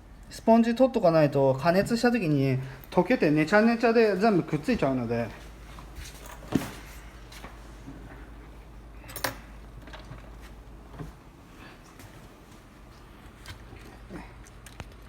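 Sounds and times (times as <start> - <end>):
tools clicking and clinking: 9.0 - 10.1.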